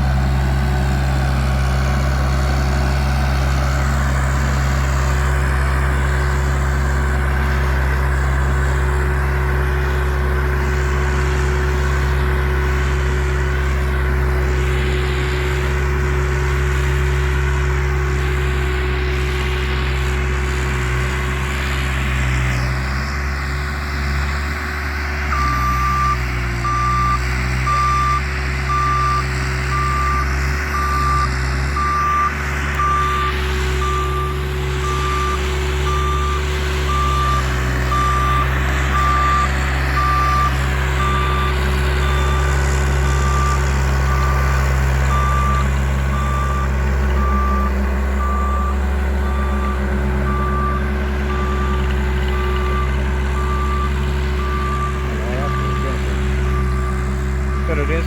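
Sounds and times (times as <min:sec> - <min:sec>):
diesel engine running: 0:00.0 - 0:58.0
reversing alarm beeping: 0:25.1 - 0:58.0.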